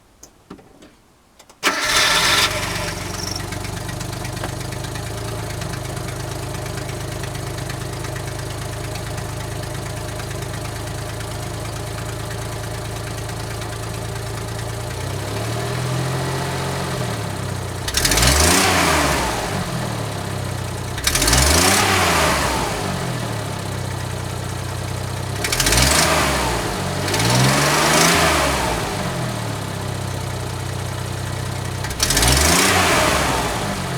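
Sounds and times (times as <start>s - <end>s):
clattering rattle in engine bay: 0.5s - 9.3s
car engine starting and revving: 1.6s - 33.9s.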